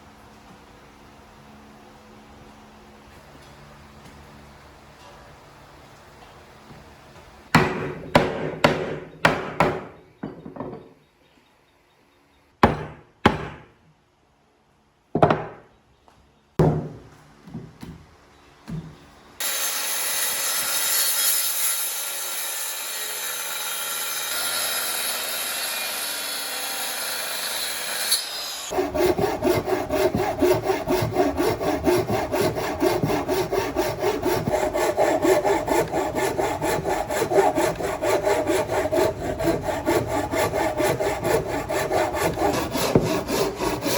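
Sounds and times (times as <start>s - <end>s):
sharp knocks on wood: 7.6s - 10.8s, 12.6s - 13.7s, 15.2s - 15.6s, 16.6s - 17.0s
hand saw cutting wood: 19.4s - 43.9s
rasping on wood: 28.7s - 43.9s.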